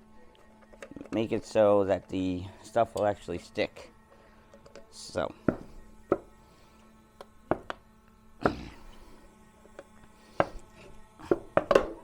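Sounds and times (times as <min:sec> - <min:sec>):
faint steady hum: 0:00.0 - 0:12.0
objects knocking and clicking: 0:11.2 - 0:12.0.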